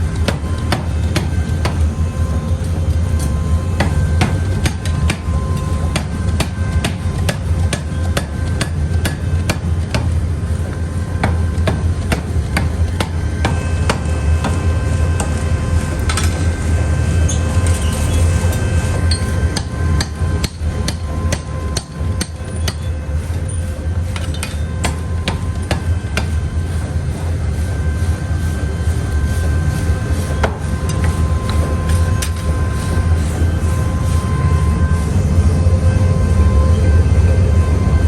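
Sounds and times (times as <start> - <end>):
low machine hum: 0.0 - 38.0
metal being hammered: 0.2 - 1.9, 3.8 - 10.2, 11.2 - 15.4, 19.1 - 22.9, 24.1 - 26.4.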